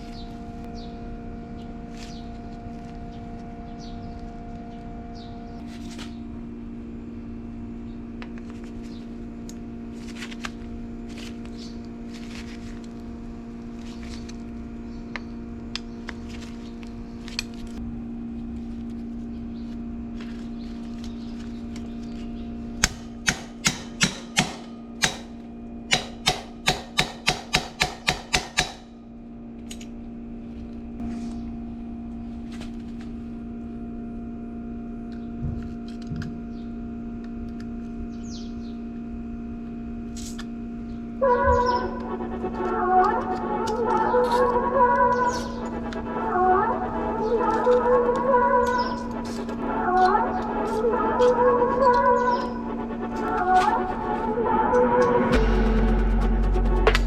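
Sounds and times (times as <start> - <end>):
mechanical hum: 0.0 - 57.0
loud sharp knocks: 22.8 - 25.3, 25.9 - 28.9.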